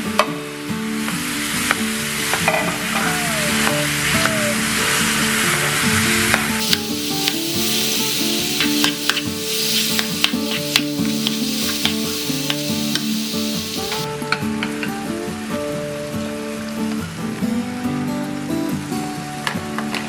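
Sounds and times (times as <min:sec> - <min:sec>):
food sizzling in hot oil: 0:06.6 - 0:14.1.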